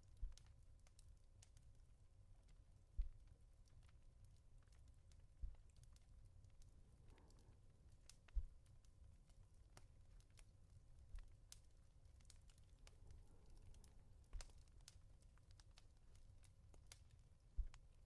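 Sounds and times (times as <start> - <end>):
fireplace crackling: 0.0 - 18.0
soft pats on a pillow: 2.9 - 3.3, 5.4 - 6.0, 8.0 - 8.8, 17.5 - 17.9.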